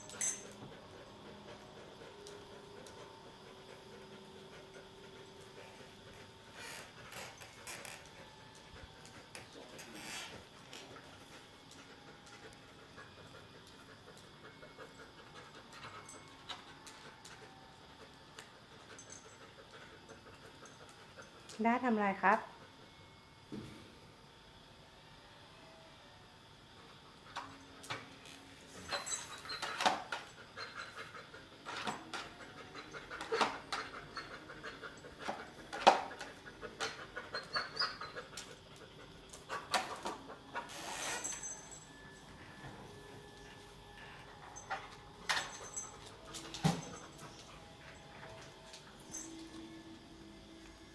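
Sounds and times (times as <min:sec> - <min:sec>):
dog panting: 0:00.6 - 0:09.7, 0:10.4 - 0:17.6, 0:30.3 - 0:40.6.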